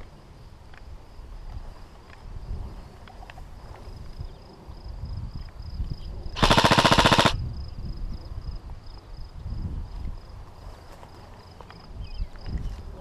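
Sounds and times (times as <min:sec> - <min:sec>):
airsoft rifle full-auto burst: 0:06.4 - 0:07.4.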